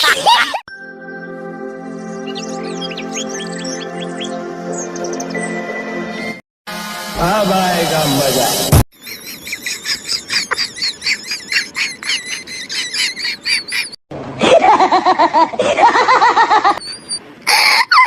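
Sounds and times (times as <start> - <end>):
high-pitched laughter: 0.0 - 0.6, 9.5 - 16.8, 17.4 - 18.0
lower fuller laughter: 0.0 - 0.6, 9.7 - 16.8.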